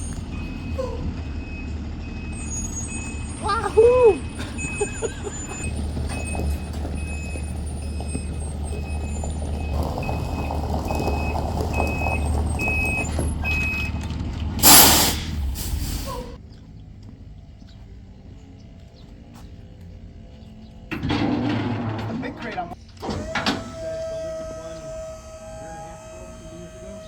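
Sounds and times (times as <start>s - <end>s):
truck backup alarm beeping: 0.0s - 16.4s, 23.0s - 27.0s
truck engine running: 0.0s - 27.0s
air brakes hissing: 2.2s - 3.4s, 14.6s - 16.4s.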